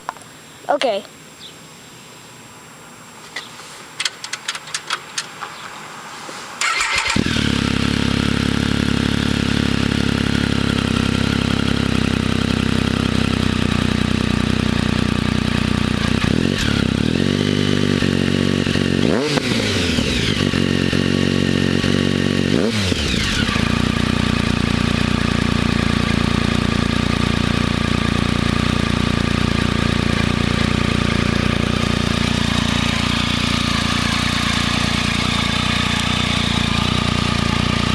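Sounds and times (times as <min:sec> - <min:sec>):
clicks: 0:03.3 - 0:05.8
motorcycle engine idling and revving: 0:04.1 - 0:37.9.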